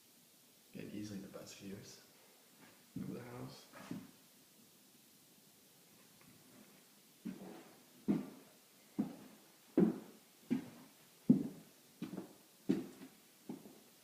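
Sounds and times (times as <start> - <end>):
footsteps echoing in empty room: 7.2 - 13.9.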